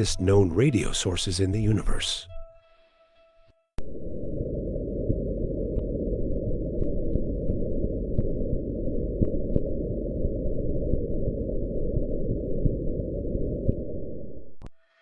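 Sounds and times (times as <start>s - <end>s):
low rushing static: 3.8s - 14.6s.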